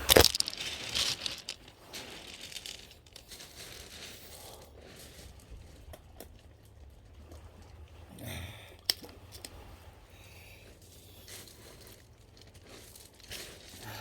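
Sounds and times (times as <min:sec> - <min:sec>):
rustling and crinkling handling noise: 0:00.0 - 0:07.8, 0:10.6 - 0:14.0.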